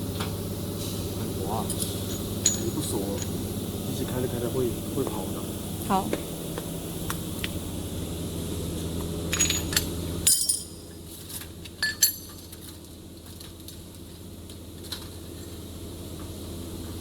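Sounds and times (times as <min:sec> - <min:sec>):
small steel parts clinking: 0:01.6 - 0:03.3, 0:09.3 - 0:10.8, 0:11.8 - 0:12.7.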